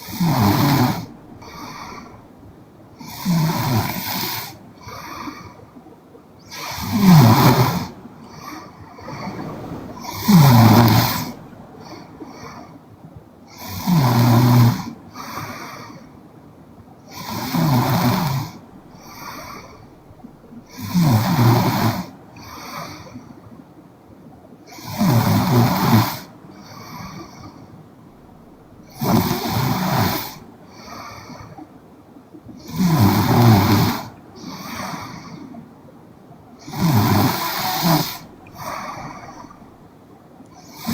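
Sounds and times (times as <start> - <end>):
woman snoring: 0.0 - 1.1, 10.0 - 11.5
soft breath sound: 6.5 - 14.2.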